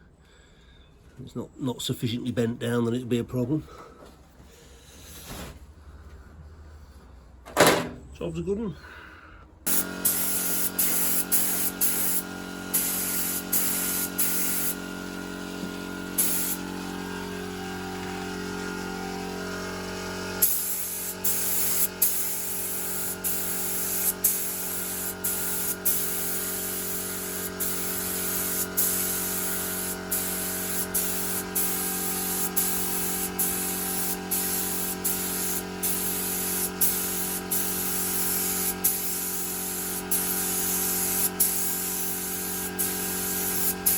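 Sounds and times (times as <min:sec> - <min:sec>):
paint spray gun hissing: 0:09.7 - 0:43.9.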